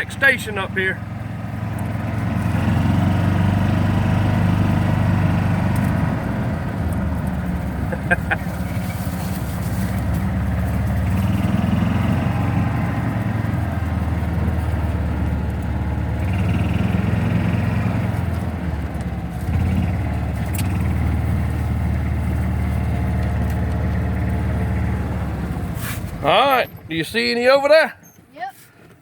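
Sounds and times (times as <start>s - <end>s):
vehicle engine running: 0.0s - 29.0s.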